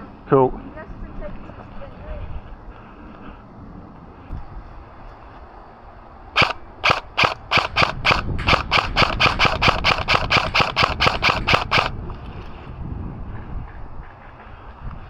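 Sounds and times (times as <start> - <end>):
airsoft gun shots: 6.4 - 11.9.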